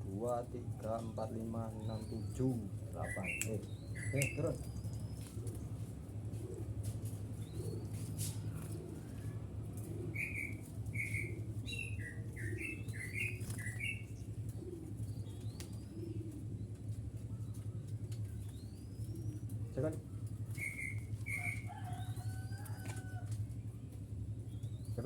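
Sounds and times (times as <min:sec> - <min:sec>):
doves cooing: 0:00.0 - 0:25.0
small bird chirping: 0:01.8 - 0:05.4, 0:10.1 - 0:14.3, 0:20.3 - 0:23.0.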